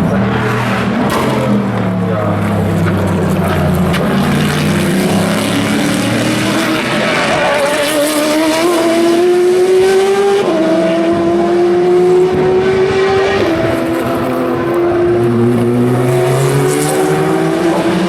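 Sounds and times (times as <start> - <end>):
race car engine accelerating: 0.0 - 18.0.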